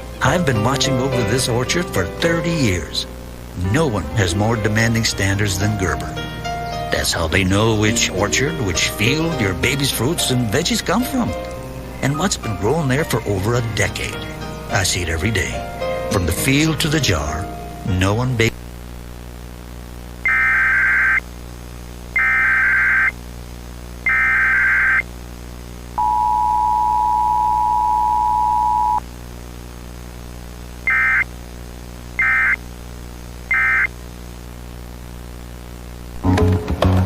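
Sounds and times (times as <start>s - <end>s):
faint steady hum: 0.0s - 36.2s
warbling digital data bursts: 20.2s - 21.2s, 22.2s - 23.2s, 24.1s - 25.0s, 30.9s - 31.3s, 33.5s - 33.9s
two-tone attention signal: 26.0s - 29.0s.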